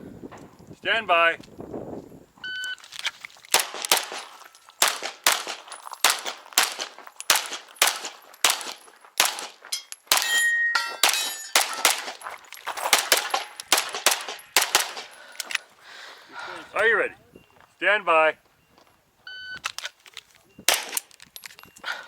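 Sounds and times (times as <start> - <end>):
pistol shots: 3.5 - 12.2, 12.8 - 15.2, 20.7 - 21.1
metallic ringing: 9.7 - 12.2, 13.2 - 15.2.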